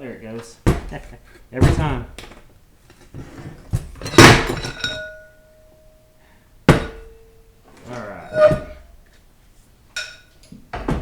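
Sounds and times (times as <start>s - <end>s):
metal parts clanking on metal: 3.8s - 5.3s, 7.8s - 8.9s
ringing metallic tone: 4.8s - 6.2s, 6.8s - 9.0s.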